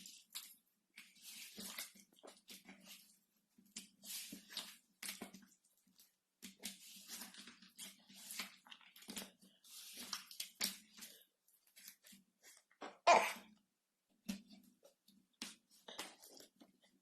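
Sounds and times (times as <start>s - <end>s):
slime squelching: 0.0s - 13.4s.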